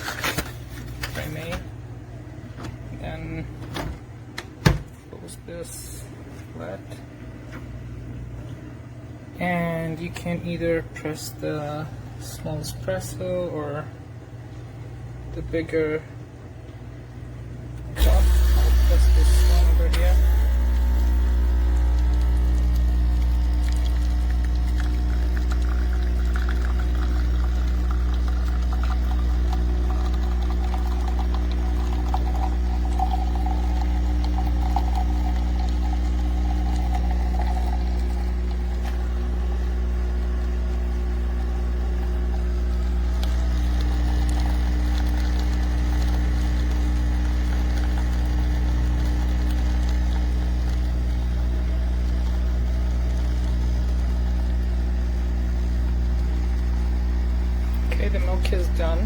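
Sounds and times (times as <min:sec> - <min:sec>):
espresso machine pump humming: 0:00.0 - 0:59.0
milk frother running: 0:17.9 - 0:59.0.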